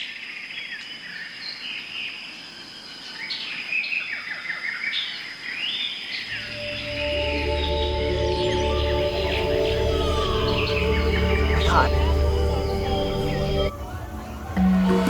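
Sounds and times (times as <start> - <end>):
birds chirping and calling: 3.3 - 15.0.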